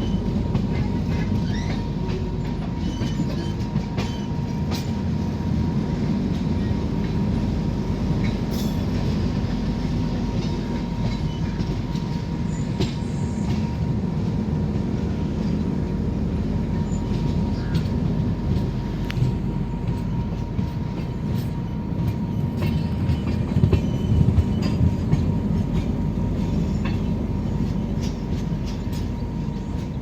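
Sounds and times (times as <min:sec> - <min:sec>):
train clicks and knocks: 0:00.0 - 0:30.0
train wheels rumbling: 0:00.0 - 0:30.0.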